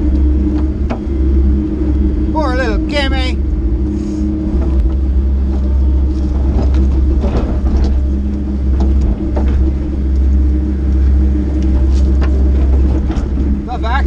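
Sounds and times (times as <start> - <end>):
excavator diesel engine running: 0.0 - 14.0
bucket scraping and clunking in dirt: 3.9 - 14.0.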